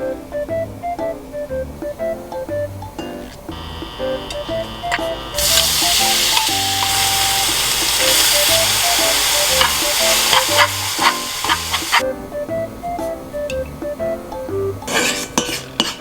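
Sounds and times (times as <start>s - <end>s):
light background music: 0.0s - 16.0s
food sizzling in a hot pan: 3.6s - 12.0s.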